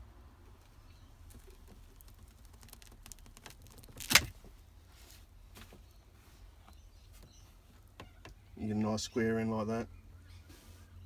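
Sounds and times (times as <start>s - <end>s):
cable cutter snapping through cable: 3.4s - 4.4s.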